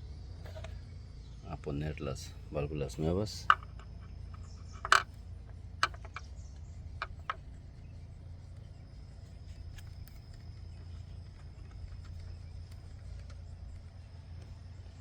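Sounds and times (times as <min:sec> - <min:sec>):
steady low hum: 0:00.0 - 0:15.0
small parts clicking and tapping: 0:03.3 - 0:07.6.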